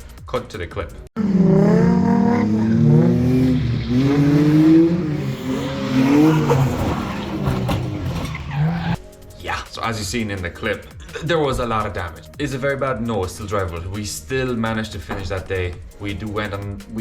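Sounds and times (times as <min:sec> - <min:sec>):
car engine revving hard: 0:01.2 - 0:09.0.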